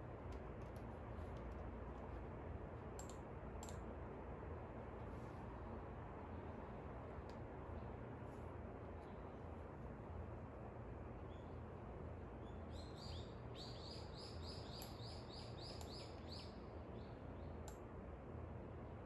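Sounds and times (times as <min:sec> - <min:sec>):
songbird chirping: 0:12.4 - 0:17.7.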